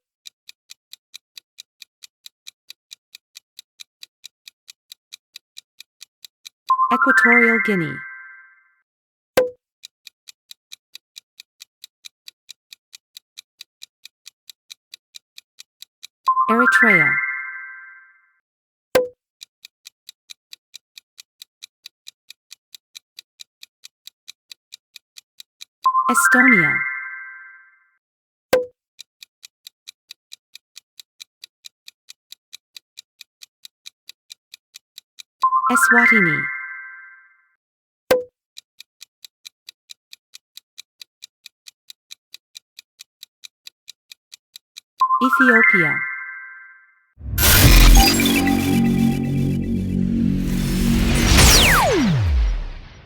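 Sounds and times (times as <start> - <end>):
sharp click: 47.2 - 53.0.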